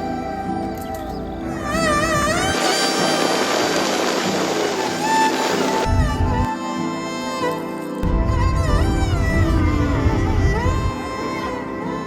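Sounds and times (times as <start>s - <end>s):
wavering vibrato melody: 0.0s - 12.0s
sustained tones: 8.0s - 12.0s.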